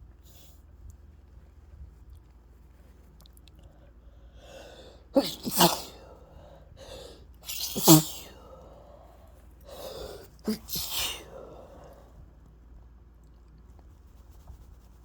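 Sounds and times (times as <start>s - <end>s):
in-breath: 3.6s - 5.2s, 5.9s - 12.3s
person sneezing: 4.5s - 6.2s, 6.8s - 8.6s, 9.7s - 11.8s.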